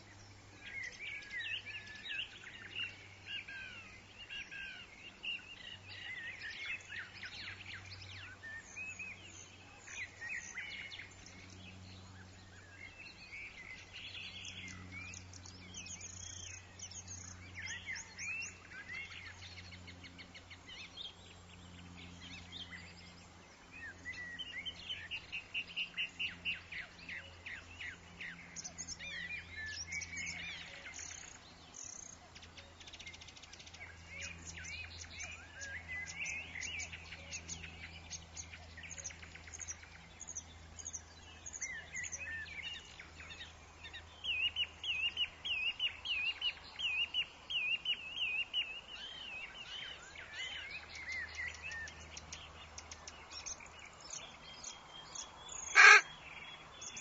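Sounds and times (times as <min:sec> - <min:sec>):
faint low background noise: 0:00.0 - 0:57.0
songbirds chirping and trilling: 0:00.0 - 0:57.0.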